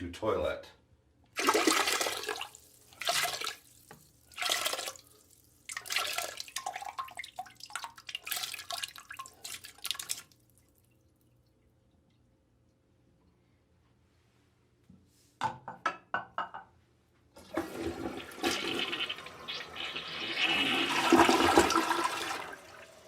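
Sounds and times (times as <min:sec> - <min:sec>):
vomit splashing into toilet water: 0:01.4 - 0:11.6, 0:17.4 - 0:23.0.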